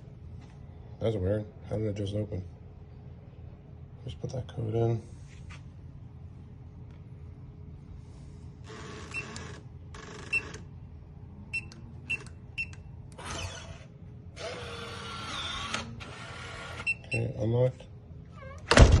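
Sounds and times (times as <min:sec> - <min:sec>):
keypad lock beeps: 0:09.1 - 0:09.5, 0:11.5 - 0:12.9.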